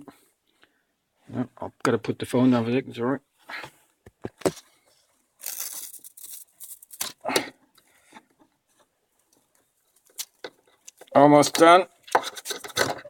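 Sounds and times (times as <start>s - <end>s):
handling rustle: 3.7s - 7.2s.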